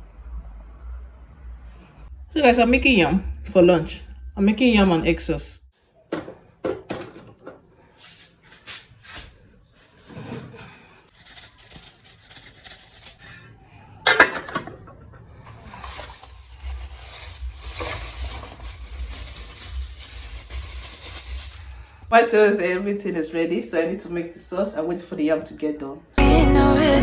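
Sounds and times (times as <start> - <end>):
kitchen clatter: 6.1 - 7.7, 10.0 - 21.7
kitchen knocks and clicks: 6.1 - 7.7, 14.1 - 15.3.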